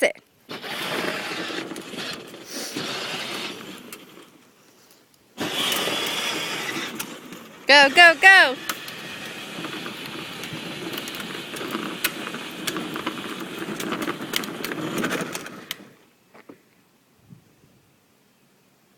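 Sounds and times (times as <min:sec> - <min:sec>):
electric toy car motor running: 0:00.5 - 0:04.4, 0:05.4 - 0:16.0
wheels rolling with clicks: 0:00.5 - 0:16.6.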